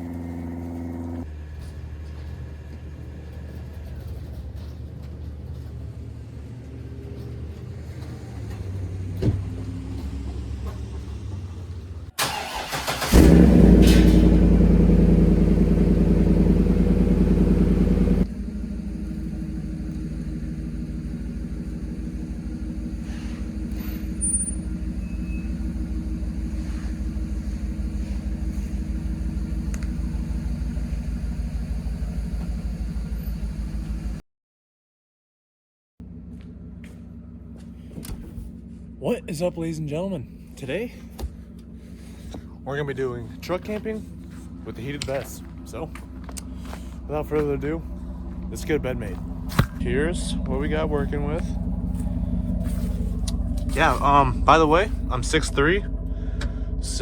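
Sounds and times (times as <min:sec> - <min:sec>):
truck engine starting and idling: 0:00.0 - 0:34.2, 0:36.0 - 0:57.0
low steady hum: 0:38.3 - 0:57.0.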